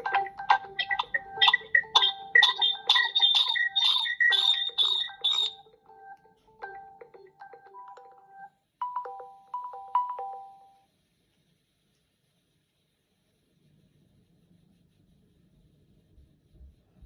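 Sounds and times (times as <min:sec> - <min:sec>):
repeating ringtone chime: 0:00.0 - 0:10.9
short ringtone melody: 0:00.0 - 0:10.9.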